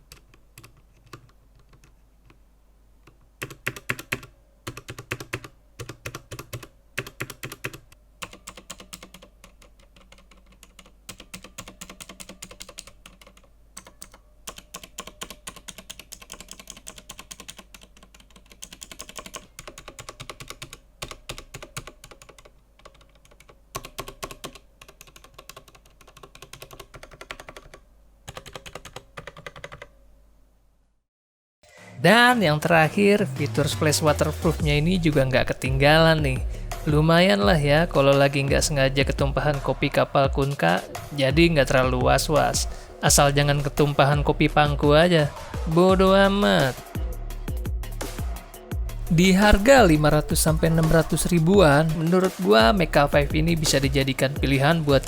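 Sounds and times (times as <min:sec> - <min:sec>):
clicky mechanical keyboard typing: 0:00.1 - 0:02.4, 0:03.0 - 0:29.9.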